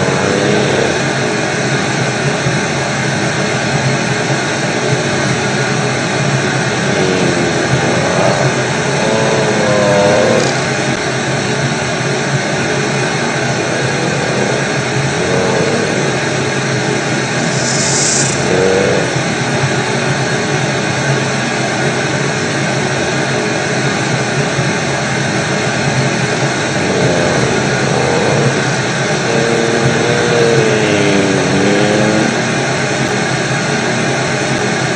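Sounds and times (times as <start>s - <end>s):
white-noise static: 12.5s - 19.4s.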